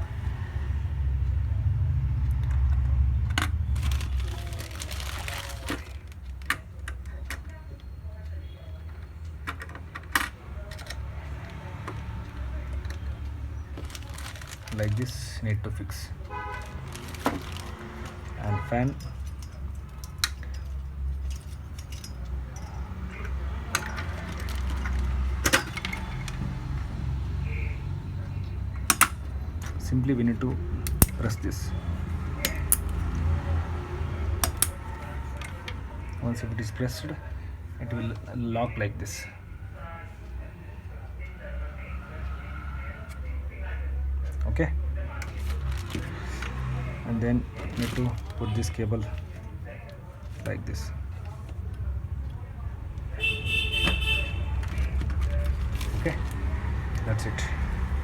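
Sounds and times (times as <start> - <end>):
handling noise: 2.0 - 7.6, 8.8 - 27.4, 28.1 - 38.4, 45.1 - 58.0
sharp metal clicks: 28.7 - 29.8, 30.8 - 31.5, 32.4 - 33.3, 34.3 - 35.8.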